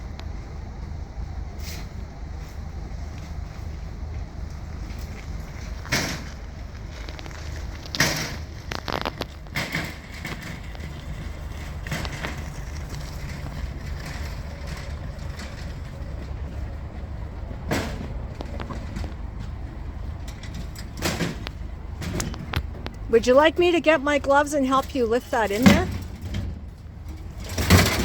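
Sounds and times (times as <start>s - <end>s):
steady low rumble: 0.0s - 27.6s
scrap metal knocks and clatters: 4.9s - 23.0s, 25.6s - 28.0s.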